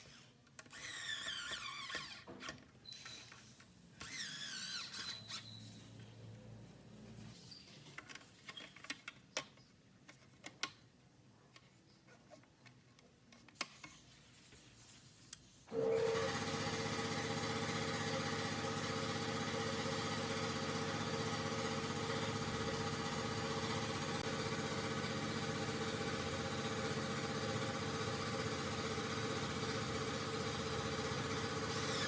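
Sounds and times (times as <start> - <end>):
electric motor humming: 15.7 - 32.0.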